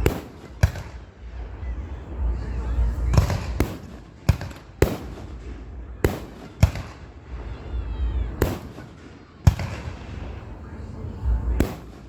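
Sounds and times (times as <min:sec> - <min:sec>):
sharp explosive bangs: 0:00.0 - 0:01.1
low rumble: 0:00.0 - 0:08.8, 0:09.6 - 0:12.0.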